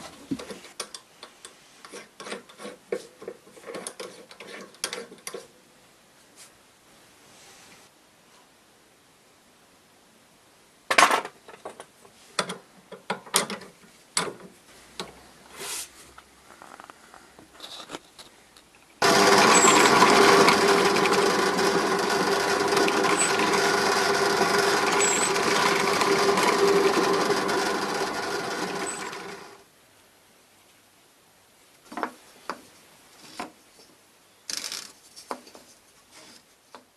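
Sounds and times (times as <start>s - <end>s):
electric power tool running: 19.0s - 29.6s.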